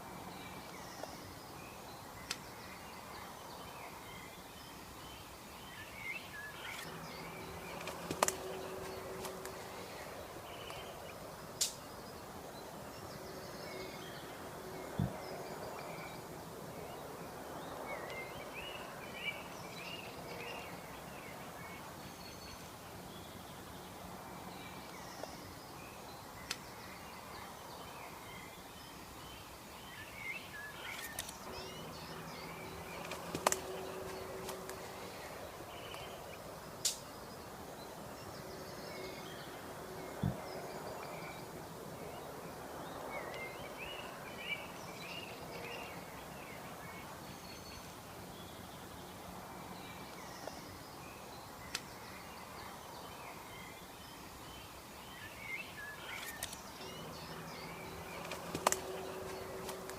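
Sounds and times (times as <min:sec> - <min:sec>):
faint steady hum: 0:00.0 - 0:59.9
small birds chirping: 0:00.0 - 0:59.9
sharp clicks: 0:58.2 - 0:59.0.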